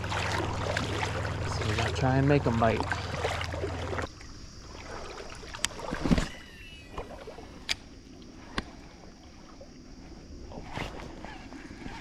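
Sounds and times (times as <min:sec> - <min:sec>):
running water: 0:00.0 - 0:07.6.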